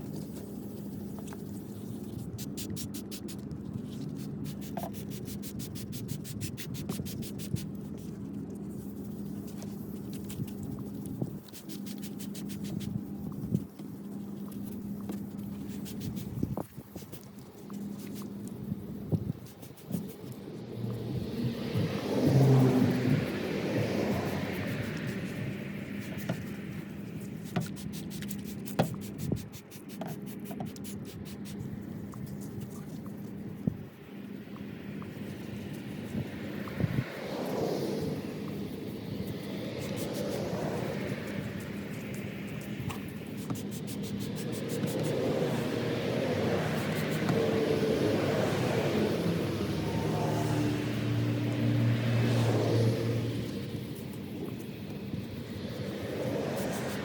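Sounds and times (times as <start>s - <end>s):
scratchy abrasive rubbing on plastic: 0.0s - 20.6s, 21.8s - 33.4s, 39.3s - 49.2s.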